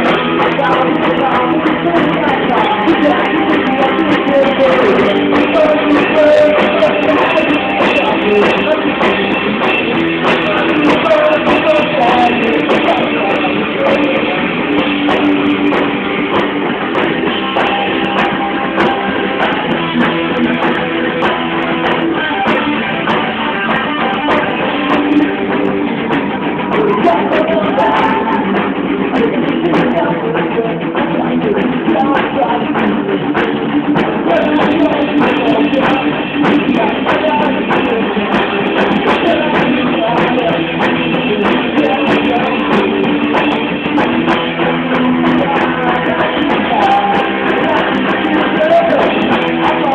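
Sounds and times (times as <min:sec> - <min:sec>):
live rock band: 0:00.0 - 0:49.9
person singing: 0:00.0 - 0:49.9.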